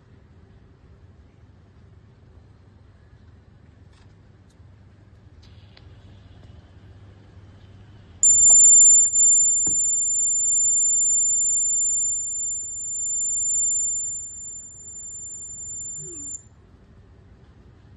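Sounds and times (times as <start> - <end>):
high-pitched alarm buzzer tone: 8.2 - 16.4.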